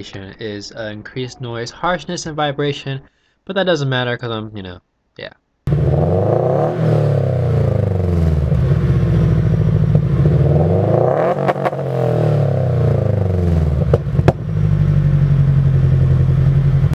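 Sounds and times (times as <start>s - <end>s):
car engine revving: 5.7s - 16.9s.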